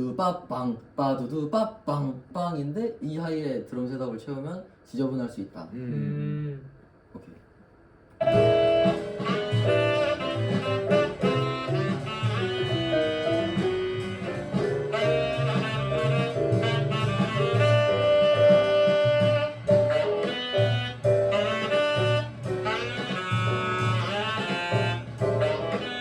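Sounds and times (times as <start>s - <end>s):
jazz with saxophone and brass: 8.2s - 26.0s.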